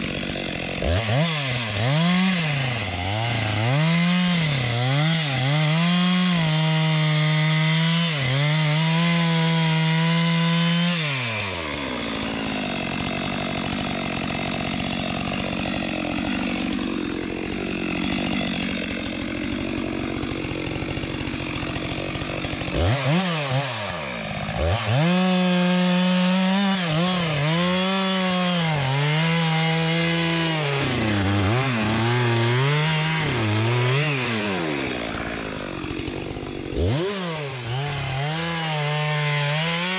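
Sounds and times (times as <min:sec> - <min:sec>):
two-stroke chainsaw revving: 0:00.0 - 0:39.9.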